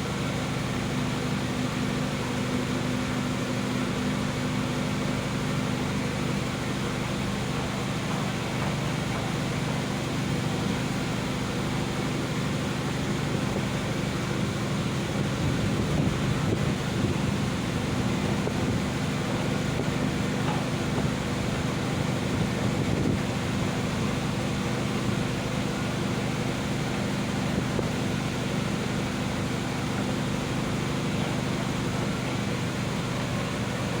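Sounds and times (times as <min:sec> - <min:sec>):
ship engines droning: 0:00.0 - 0:34.0.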